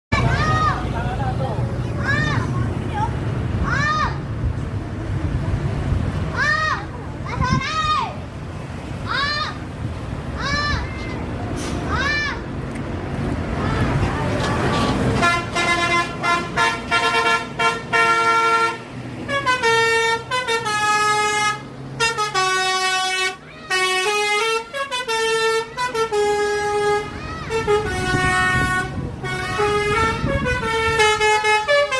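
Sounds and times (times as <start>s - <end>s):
bus musical horn melody: 14.6s - 31.9s.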